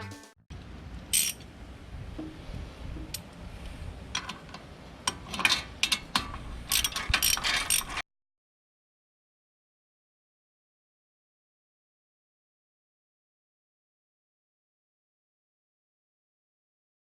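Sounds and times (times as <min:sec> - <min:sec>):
metallic clicks and clatter of tools: 0:01.2 - 0:01.4, 0:04.2 - 0:08.0.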